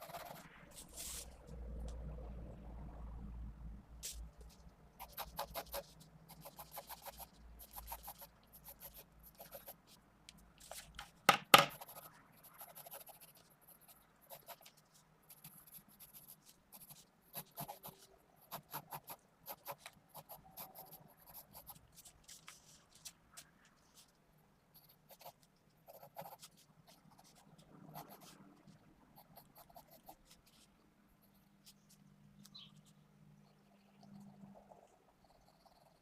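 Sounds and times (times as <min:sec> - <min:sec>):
pencil sketching on paper: 0:00.0 - 0:01.3, 0:05.0 - 0:09.8, 0:11.7 - 0:23.1, 0:24.8 - 0:28.4
knock: 0:11.3 - 0:11.8.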